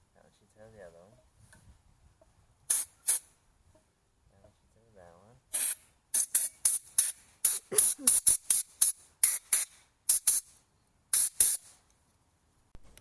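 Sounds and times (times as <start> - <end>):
spray bursts hissing from nozzle: 2.7 - 3.2, 5.5 - 10.5, 11.2 - 11.8.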